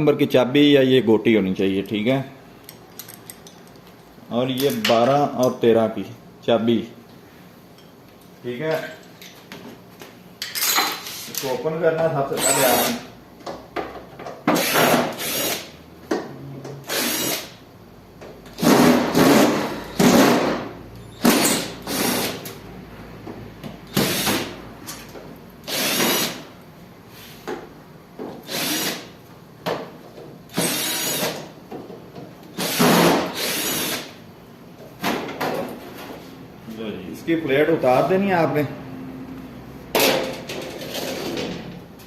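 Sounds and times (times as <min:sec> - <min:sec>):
cordless drill short bursts: 0:12.4 - 0:13.1, 0:14.5 - 0:15.7, 0:16.9 - 0:17.6, 0:21.2 - 0:22.4, 0:23.9 - 0:24.5, 0:25.7 - 0:26.4, 0:28.5 - 0:29.1, 0:30.5 - 0:31.4, 0:32.6 - 0:34.2.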